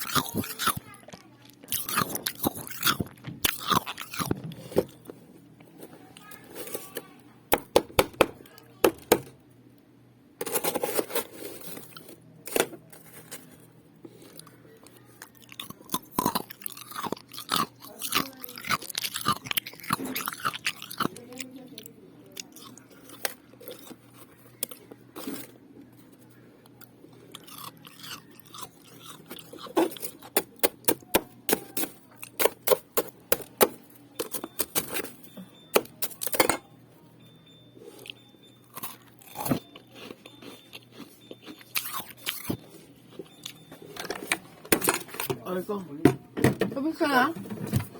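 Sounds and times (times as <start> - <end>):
ice being chewed: 0.0 - 7.0, 10.5 - 33.6, 37.8 - 44.4.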